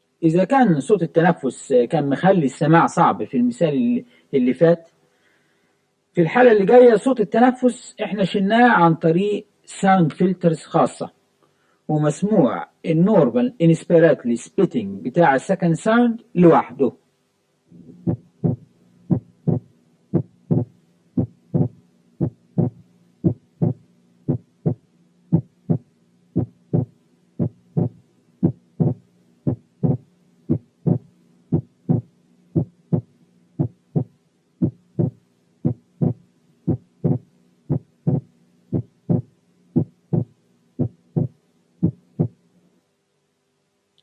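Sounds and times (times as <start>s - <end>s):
heartbeat lub-dub: 17.9s - 42.4s.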